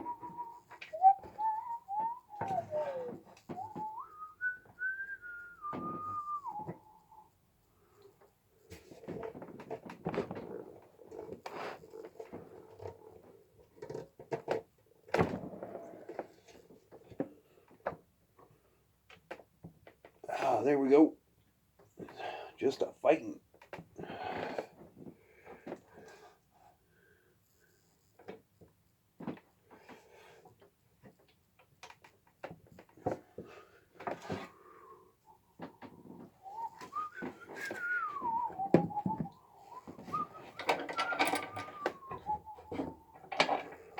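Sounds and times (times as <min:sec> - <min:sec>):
hand tools clicking and knocking: 0:38.6 - 0:43.9
tools knocking and clicking: 0:40.6 - 0:42.0, 0:42.7 - 0:43.8.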